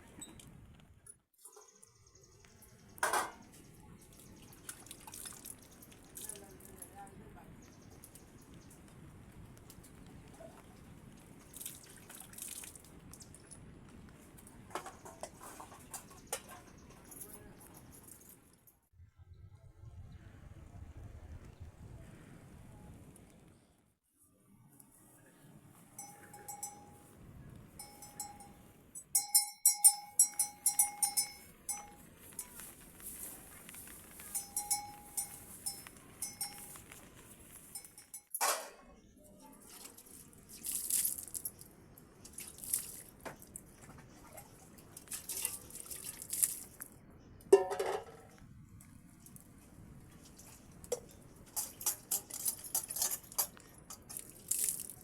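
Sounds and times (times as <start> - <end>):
high metallic clinks: 26.0 - 27.1, 27.8 - 32.7, 34.2 - 36.9
small metal bell clanking: 26.0 - 27.1, 27.8 - 32.7, 34.2 - 37.0, 37.8 - 38.5.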